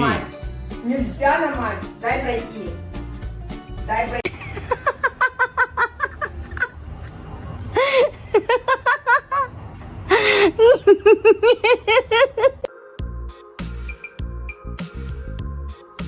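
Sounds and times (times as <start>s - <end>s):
person laughing hard: 4.3s - 7.2s, 7.8s - 9.5s, 10.1s - 12.7s.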